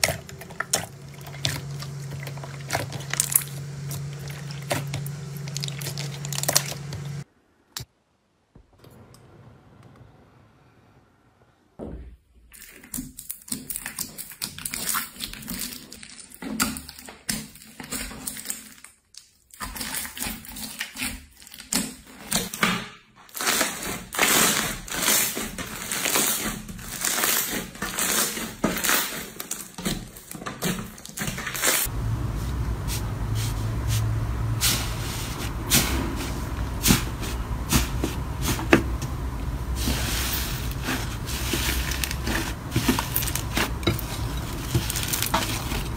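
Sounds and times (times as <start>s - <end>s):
slime squishing: 0.0s - 7.2s, 12.5s - 22.2s, 32.6s - 45.9s
steady low hum: 0.0s - 7.2s, 31.9s - 45.9s
slime crackling and popping: 40.7s - 45.9s.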